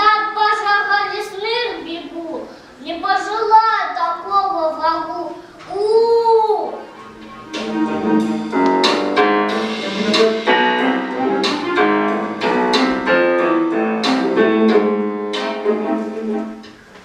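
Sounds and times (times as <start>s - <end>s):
piano music: 6.8s - 16.9s.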